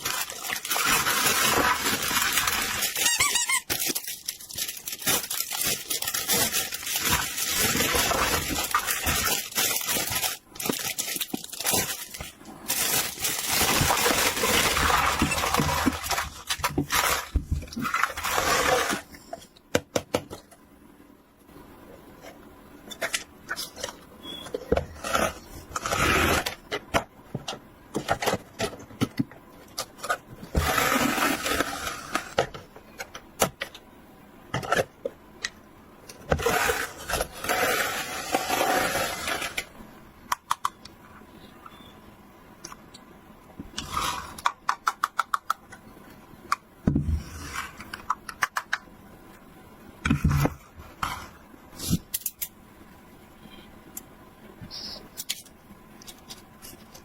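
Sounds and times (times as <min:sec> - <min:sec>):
plastic and paper rustling: 0:00.0 - 0:19.5, 0:55.1 - 0:57.0.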